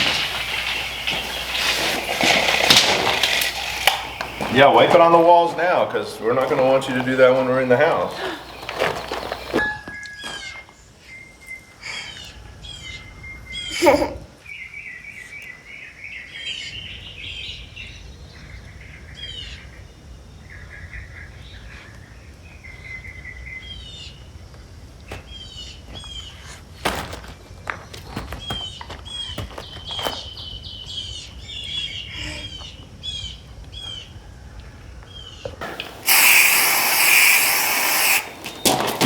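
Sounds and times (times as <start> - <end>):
songbirds singing: 0.0 - 9.6, 27.7 - 34.2, 35.1 - 39.0.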